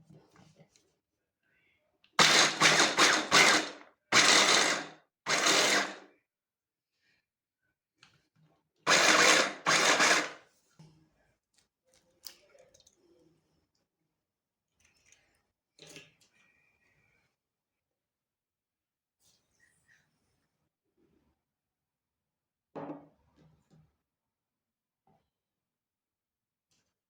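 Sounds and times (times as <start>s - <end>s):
electric blender pulsing: 2.2s - 6.1s, 8.9s - 10.4s.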